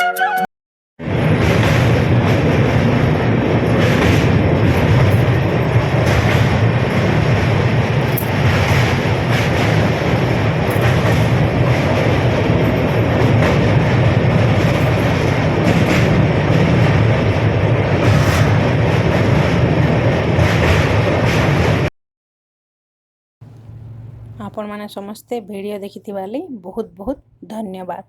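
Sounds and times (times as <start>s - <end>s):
train rumbling: 1.0s - 21.9s, 23.4s - 28.0s
wheels clattering over rails: 1.0s - 21.9s, 23.4s - 24.9s.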